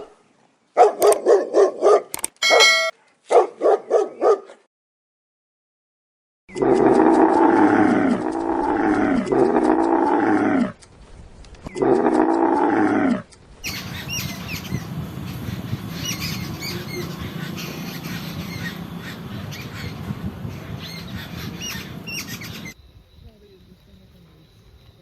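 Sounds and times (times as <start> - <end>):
high-pitched bird chirps: 2.4 - 2.9, 13.7 - 22.8
large animal roaring: 6.5 - 10.8, 11.7 - 13.3.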